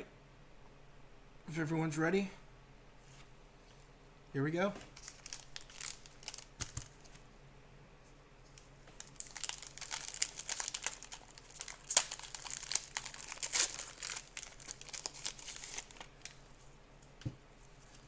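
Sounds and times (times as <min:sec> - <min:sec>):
card wrapper crinkling: 0:05.0 - 0:07.2, 0:08.5 - 0:16.7.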